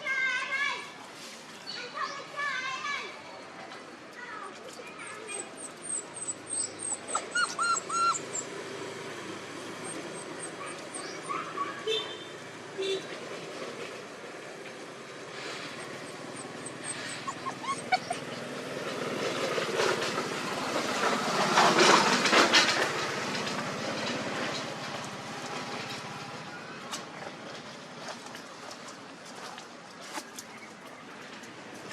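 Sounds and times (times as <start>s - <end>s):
faint puppy whimpers: 4.9s - 8.6s, 9.8s - 11.8s, 15.6s - 18.6s
passing vehicle: 5.7s - 28.8s.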